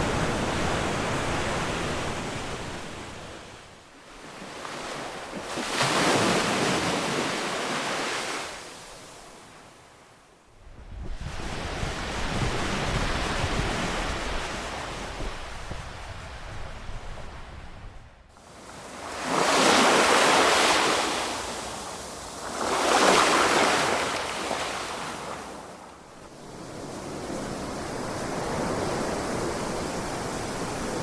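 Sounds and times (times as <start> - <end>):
ocean waves washing onto shore: 0.0 - 9.6, 18.4 - 31.0.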